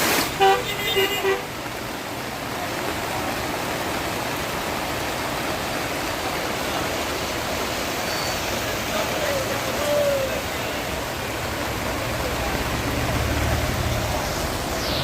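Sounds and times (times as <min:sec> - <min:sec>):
rushing water: 0:00.0 - 0:15.0
vehicle horn: 0:00.4 - 0:01.5.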